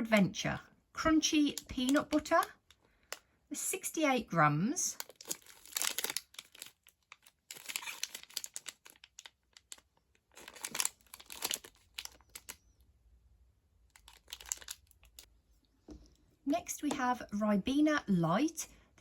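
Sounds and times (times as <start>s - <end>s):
plastic packaging crinkling: 1.3s - 3.3s, 5.0s - 12.8s, 13.9s - 15.3s.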